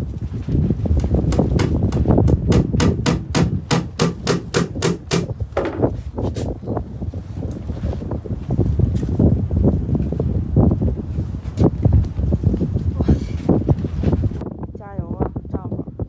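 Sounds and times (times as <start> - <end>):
wind rumble on microphone: 0.0 - 16.0
sharp knocks: 1.3 - 5.9.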